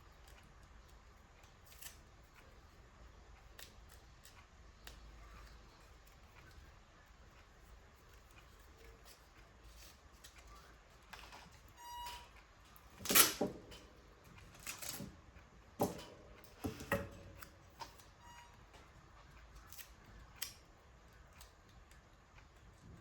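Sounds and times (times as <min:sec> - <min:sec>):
paper rustling: 0:14.3 - 0:15.2.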